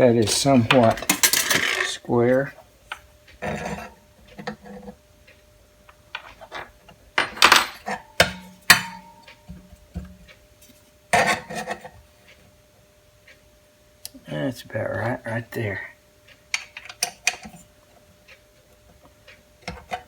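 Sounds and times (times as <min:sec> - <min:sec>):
metal parts clanking: 0:00.2 - 0:02.0.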